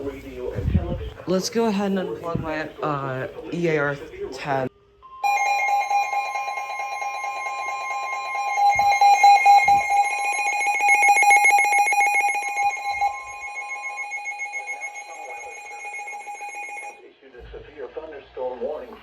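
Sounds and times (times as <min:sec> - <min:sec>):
rapid alarm beeps: 0:05.2 - 0:17.0
weather radio alarm tones: 0:05.2 - 0:17.0.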